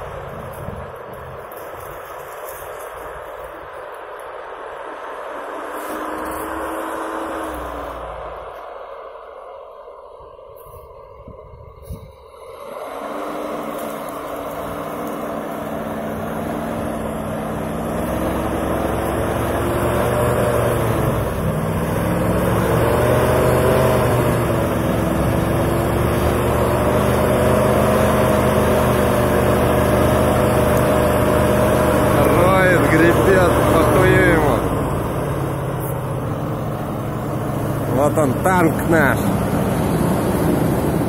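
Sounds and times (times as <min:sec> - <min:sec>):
all-terrain vehicle engine: 0:00.0 - 0:41.0.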